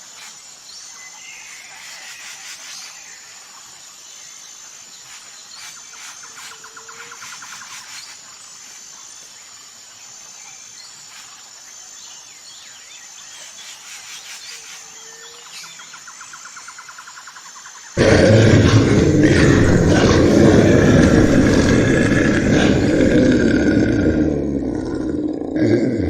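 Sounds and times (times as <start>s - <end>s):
insects trilling and chirping: 0.0s - 26.0s
loud rumbling sound effect: 18.0s - 25.6s
low animal call: 18.0s - 26.0s.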